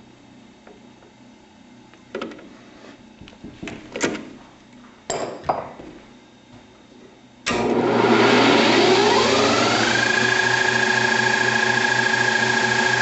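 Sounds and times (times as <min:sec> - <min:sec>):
lathe running with whine: 0:07.5 - 0:13.0.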